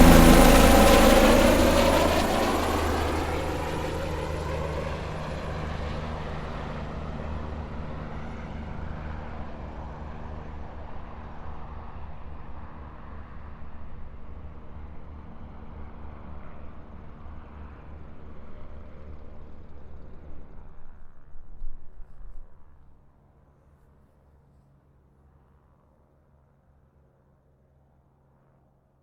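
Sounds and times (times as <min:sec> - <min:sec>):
helicopter rotor beat: 0:00.0 - 0:09.3
helicopter turbine whine: 0:00.0 - 0:11.5.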